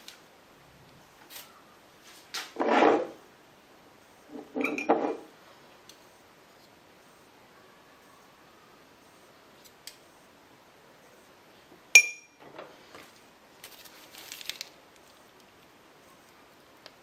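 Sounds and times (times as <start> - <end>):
kitchenware clattering: 4.4 - 5.3.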